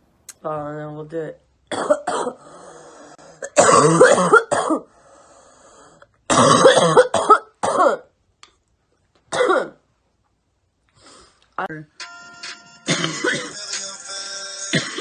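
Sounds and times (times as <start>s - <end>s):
woman coughing: 1.7s - 2.4s, 3.4s - 4.9s, 6.3s - 8.1s, 9.3s - 9.8s, 12.9s - 13.6s, 14.8s - 15.0s.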